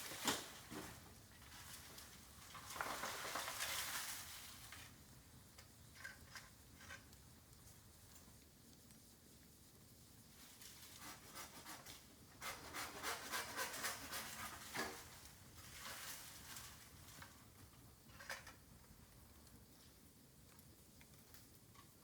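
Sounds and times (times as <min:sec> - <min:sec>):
bonfire crackling and popping: 0:15.2 - 0:22.0.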